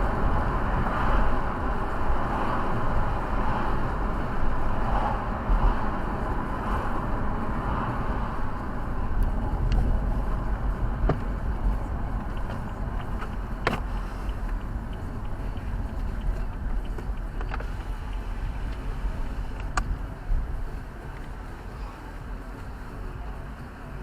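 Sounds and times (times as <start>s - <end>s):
car road and engine rumble: 0.0s - 24.0s
sharp clicks: 12.2s - 18.8s.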